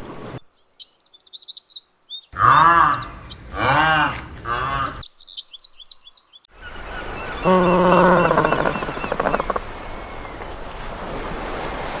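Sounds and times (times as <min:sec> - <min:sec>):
high bird chirps: 0:04.3 - 0:10.4
low arching animal call: 0:06.6 - 0:10.4
steady pitched animal call: 0:07.1 - 0:09.8.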